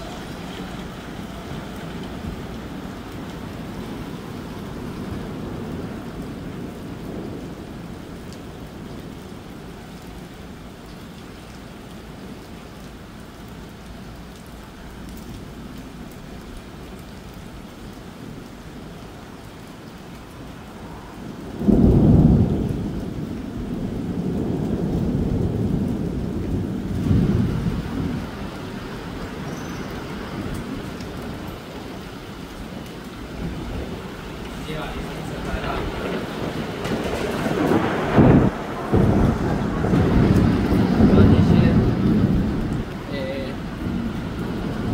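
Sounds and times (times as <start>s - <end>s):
steady rain: 0.0s - 44.9s
thunder rolling: 21.0s - 31.6s, 32.6s - 44.9s.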